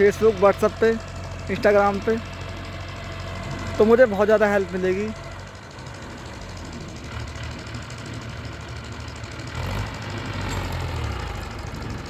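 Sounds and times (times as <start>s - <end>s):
tractor diesel engine running: 0.0s - 12.0s.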